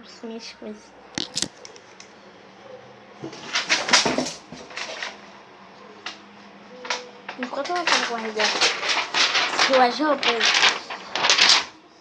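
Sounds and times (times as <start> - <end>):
plastic clicks: 1.2 - 2.1
plastic knocks and scraping: 3.2 - 5.2, 6.8 - 11.7.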